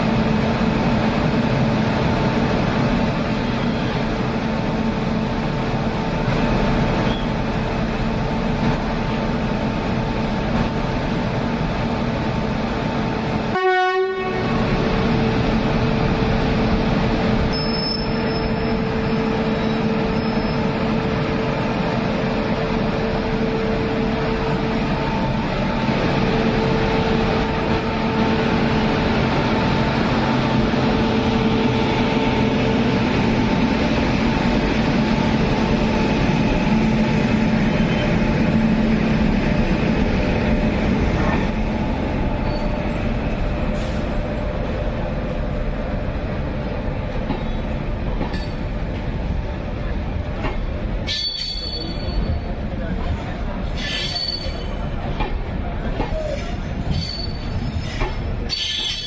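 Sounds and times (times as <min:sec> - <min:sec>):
train running noise: 0:00.0 - 0:59.0
locomotive horn blasts: 0:13.5 - 0:14.6.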